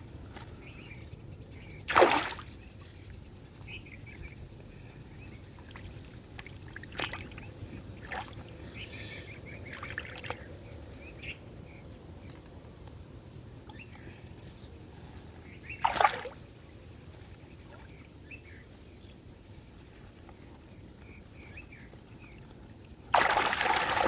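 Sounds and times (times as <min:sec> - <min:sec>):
river water splashing: 0:01.9 - 0:02.6, 0:15.8 - 0:16.4, 0:23.1 - 0:24.0.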